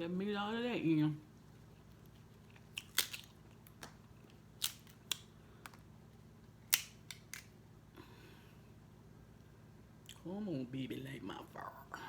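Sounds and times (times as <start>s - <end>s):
crab shells cracking: 2.4s - 5.8s, 6.6s - 7.6s.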